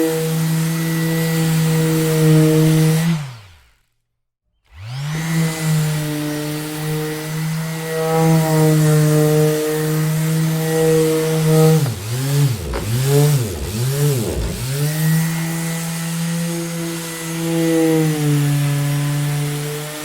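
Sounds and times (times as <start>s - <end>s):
electric sander humming: 4.8s - 20.0s.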